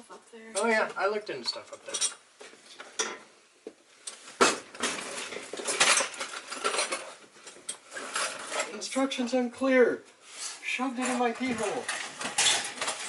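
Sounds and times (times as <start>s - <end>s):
small metal objects clinking: 5.1s - 9.0s, 11.0s - 13.0s.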